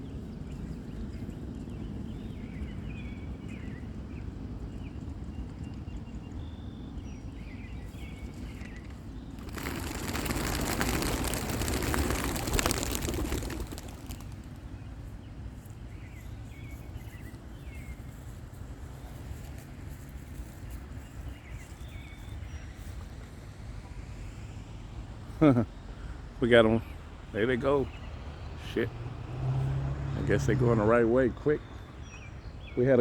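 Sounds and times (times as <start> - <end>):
wings flapping: 9.4 - 14.8.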